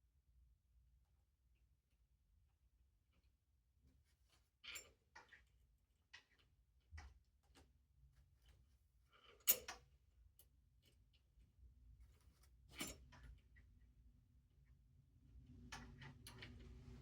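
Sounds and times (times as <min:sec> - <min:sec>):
small metal hardware clicking: 0:09.4 - 0:09.8.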